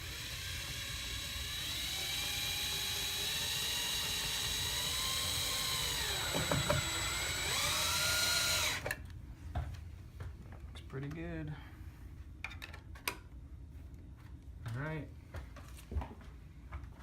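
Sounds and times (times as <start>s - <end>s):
power drill driving screw: 0.0s - 9.0s.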